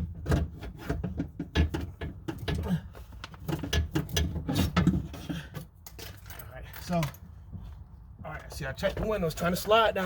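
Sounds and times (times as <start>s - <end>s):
parts knocking and rattling in car door: 0.0s - 7.7s.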